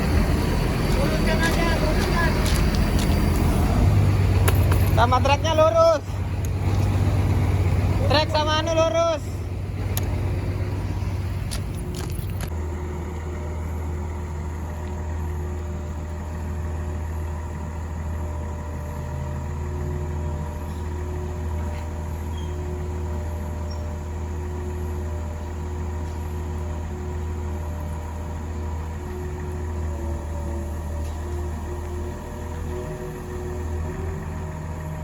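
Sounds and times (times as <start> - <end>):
excavator diesel engine running: 0.0 - 35.0.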